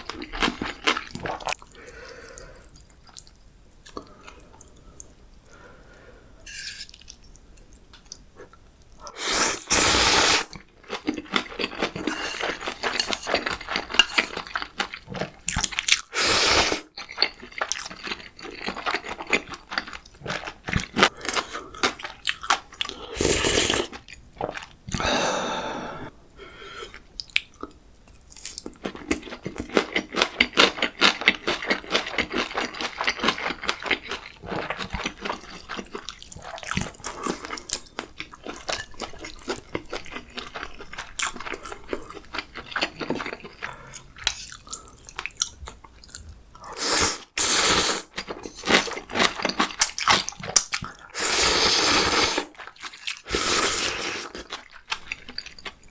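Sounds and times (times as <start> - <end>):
loud slurps: 9.2 - 10.6, 46.8 - 48.1, 51.2 - 52.5, 53.3 - 54.4
wet crackly chewing: 48.1 - 51.2, 52.1 - 53.4, 54.0 - 55.9.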